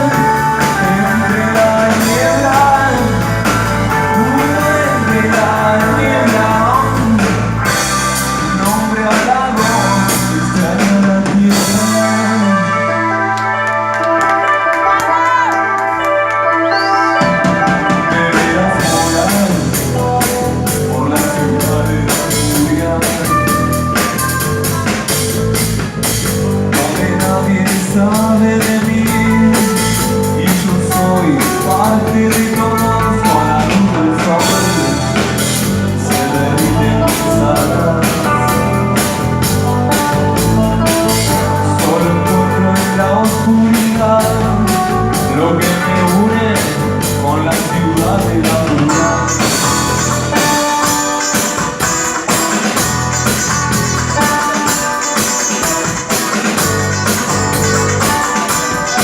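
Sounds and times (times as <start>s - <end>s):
rock band playing: 0.0s - 59.0s
faint voice singing: 17.8s - 25.4s.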